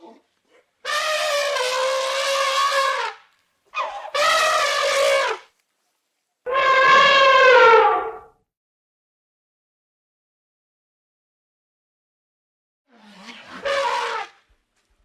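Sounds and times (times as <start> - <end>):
animal giving horn-like calls: 0.0 - 5.5, 6.5 - 8.3, 13.0 - 14.4.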